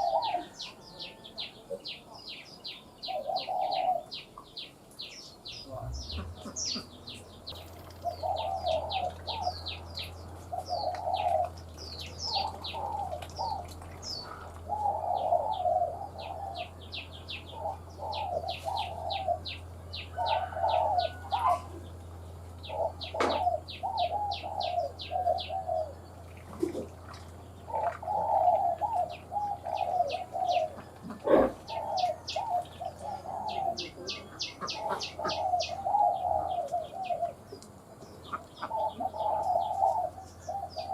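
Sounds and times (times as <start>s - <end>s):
dove cooing: 0.0s - 2.4s, 3.0s - 4.6s, 5.6s - 37.6s, 38.2s - 40.9s
small bird chirping: 0.0s - 26.8s.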